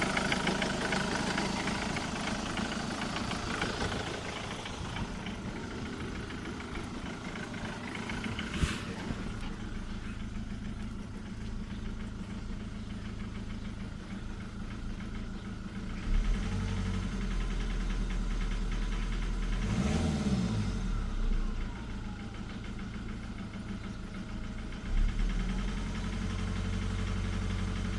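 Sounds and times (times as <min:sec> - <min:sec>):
diesel engine idling: 0:00.0 - 0:27.9
engine knocking and rattling: 0:00.0 - 0:27.9
deep hum: 0:04.5 - 0:16.0.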